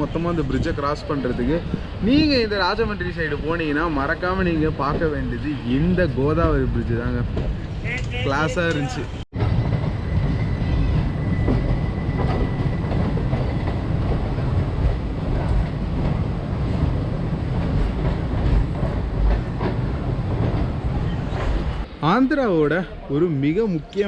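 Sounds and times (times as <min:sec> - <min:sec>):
train rumbling along track: 0:00.0 - 0:23.1
wheels clacking over rail joints: 0:06.4 - 0:21.9.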